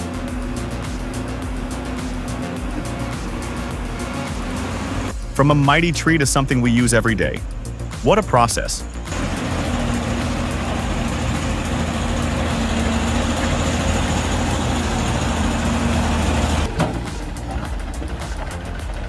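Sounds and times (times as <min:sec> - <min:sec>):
wood chipper grinding: 0:00.0 - 0:05.1, 0:09.1 - 0:18.7
wood chipper engine drone: 0:00.0 - 0:05.2, 0:09.0 - 0:18.8.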